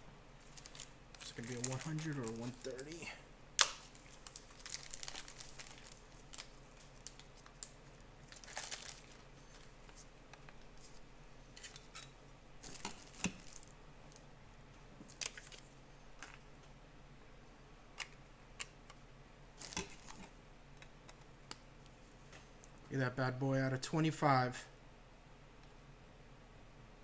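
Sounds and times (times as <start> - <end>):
trading cards and packaging rustling: 0.4 - 14.2, 15.1 - 16.4, 19.6 - 20.3.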